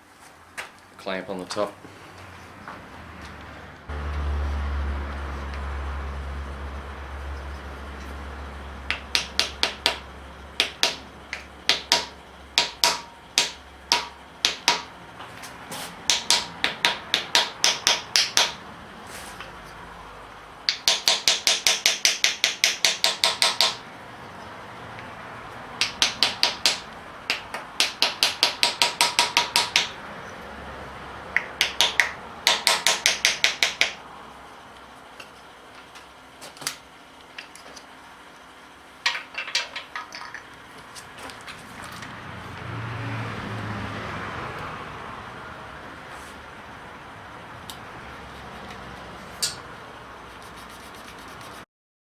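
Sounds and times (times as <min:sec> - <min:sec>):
hammer tapping metal: 0:08.8 - 0:15.0, 0:16.1 - 0:18.6, 0:20.7 - 0:23.8, 0:25.8 - 0:30.0, 0:31.3 - 0:34.0.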